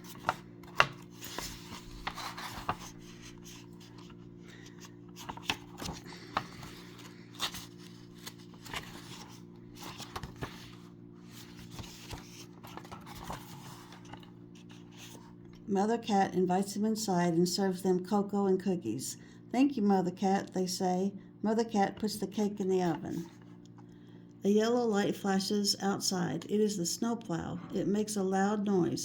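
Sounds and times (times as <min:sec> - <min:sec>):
paper pages being turned: 0:00.0 - 0:15.4
steady low hum: 0:00.0 - 0:29.0.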